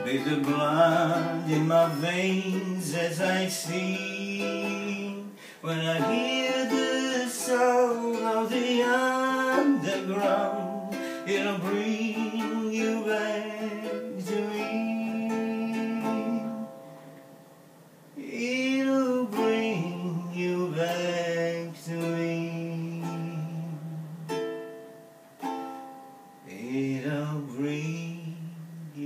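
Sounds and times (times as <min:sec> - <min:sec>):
person singing: 0:00.0 - 0:17.1, 0:18.2 - 0:24.9, 0:26.4 - 0:29.0
strummed string instrument: 0:00.0 - 0:29.0.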